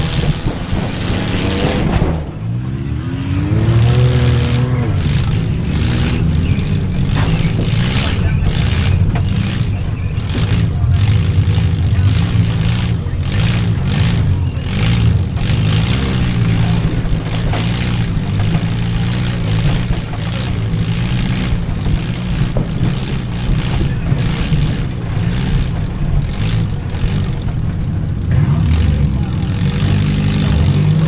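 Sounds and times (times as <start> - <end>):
van engine revving: 0.0 - 31.0
rattling bursts: 3.6 - 31.0.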